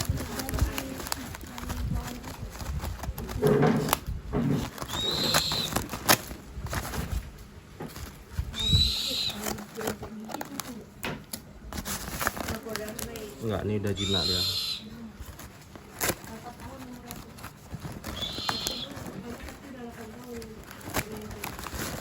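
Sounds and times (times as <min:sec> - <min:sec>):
rustling: 0:00.0 - 0:22.0.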